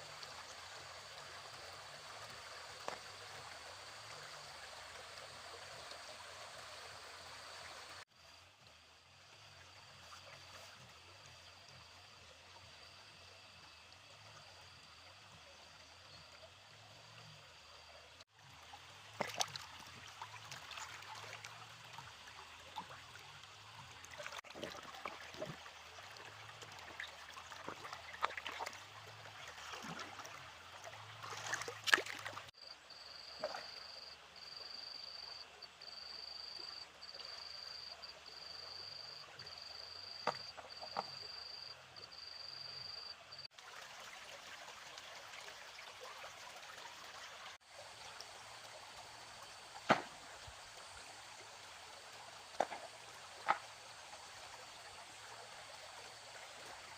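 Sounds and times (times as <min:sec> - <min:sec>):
stream water trickling: 0:00.0 - 0:56.9
knocks and splashes: 0:19.0 - 0:21.5, 0:24.0 - 0:30.4, 0:31.2 - 0:32.5, 0:33.3 - 0:33.8, 0:40.2 - 0:41.4, 0:49.8 - 0:50.5, 0:52.5 - 0:53.8.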